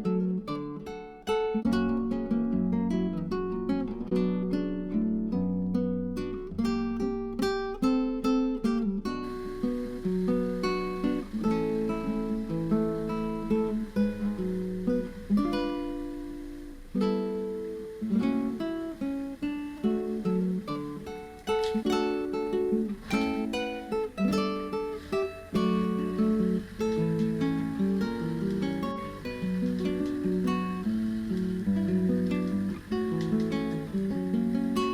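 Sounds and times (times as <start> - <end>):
acoustic guitar strumming: 0.0 - 34.9.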